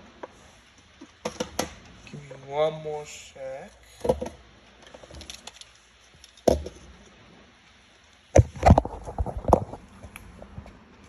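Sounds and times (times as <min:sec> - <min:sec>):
knocks and clatter of hard objects: 0:01.0 - 0:01.8, 0:04.0 - 0:05.6, 0:06.2 - 0:06.9, 0:08.3 - 0:09.8.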